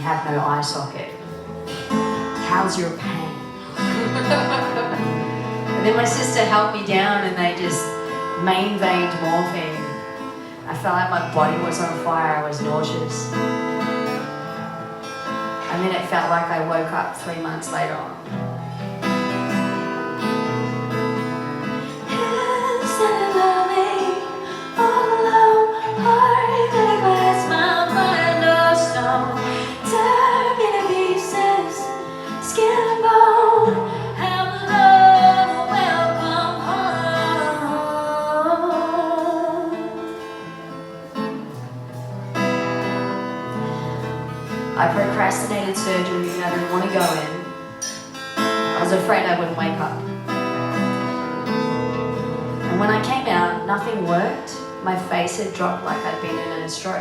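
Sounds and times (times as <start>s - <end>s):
acoustic guitar chords: 0.0s - 57.0s
woman singing wordless melody: 2.1s - 13.4s, 21.7s - 40.6s.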